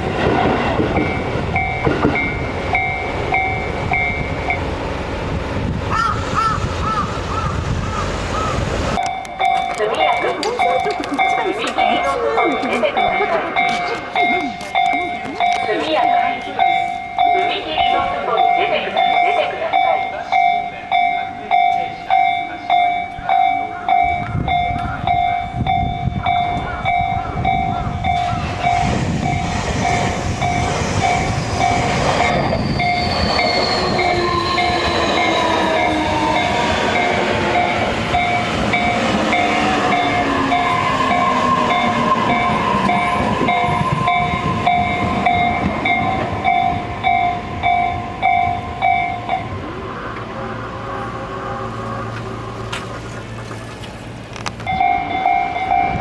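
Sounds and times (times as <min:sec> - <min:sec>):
railroad crossing bell clanging: 0:00.0 - 0:05.7, 0:08.9 - 0:56.0
train wheels rumbling on rails: 0:00.0 - 0:20.5, 0:21.7 - 0:56.0
train motor whine: 0:28.0 - 0:47.6.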